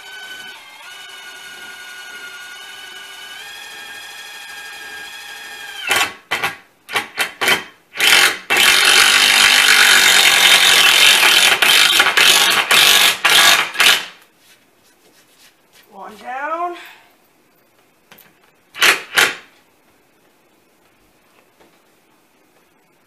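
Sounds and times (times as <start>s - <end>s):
cordless drill driving screw into wood: 0.3s - 14.1s.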